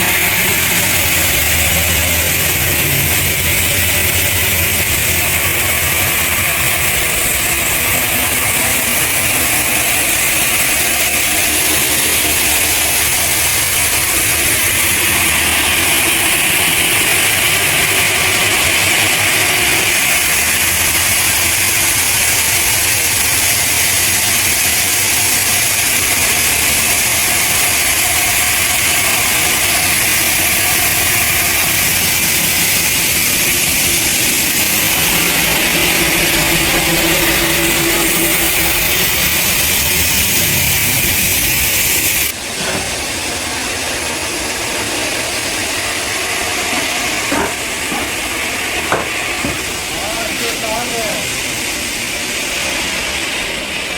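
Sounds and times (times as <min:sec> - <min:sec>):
heavy machinery running: 0:00.0 - 0:53.9.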